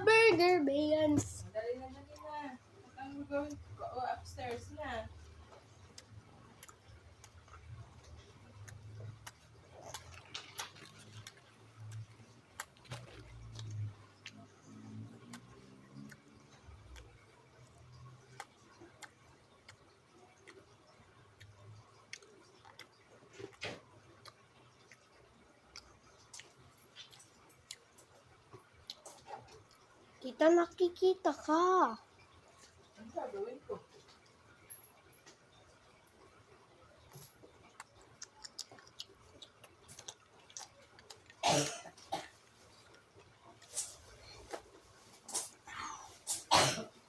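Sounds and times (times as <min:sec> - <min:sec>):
person chewing food: 0:05.4 - 0:30.0, 0:36.1 - 0:41.4
mouth sounds of eating: 0:05.9 - 0:17.3, 0:37.0 - 0:41.4.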